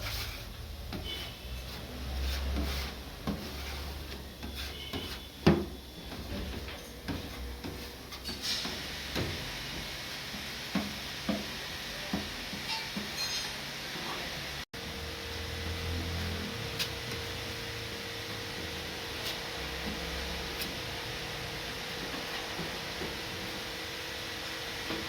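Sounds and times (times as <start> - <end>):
objects knocking and clunking: 0.8 - 13.6.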